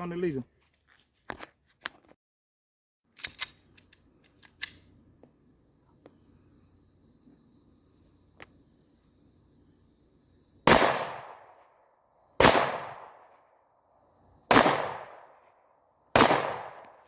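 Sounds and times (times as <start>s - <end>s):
echoing gunshots: 10.7s - 11.7s, 12.4s - 13.5s, 14.5s - 15.5s, 16.1s - 17.0s.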